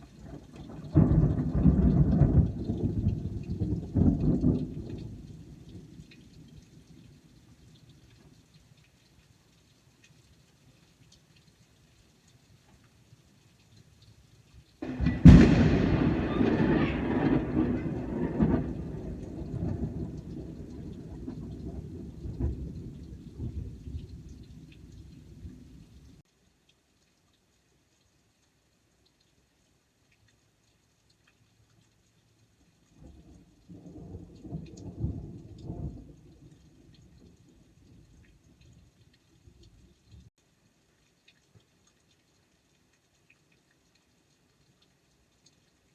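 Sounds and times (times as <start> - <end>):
faint raindrop ticks: 0.0 - 45.9
thunderclap: 0.8 - 5.2, 14.8 - 25.4.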